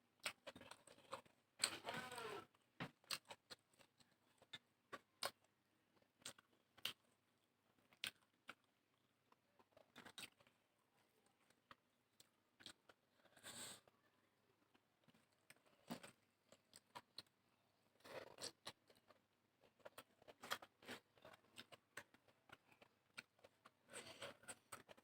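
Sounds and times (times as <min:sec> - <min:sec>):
chewing and mouth smacks: 0:02.9 - 0:07.2, 0:07.8 - 0:10.6, 0:18.0 - 0:25.0.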